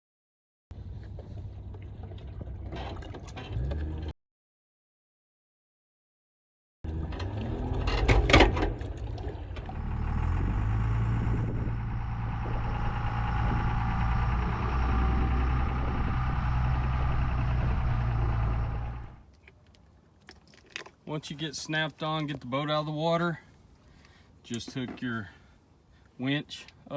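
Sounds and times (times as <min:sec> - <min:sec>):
engine running: 0:06.9 - 0:19.2
loud clunk: 0:07.1 - 0:08.9.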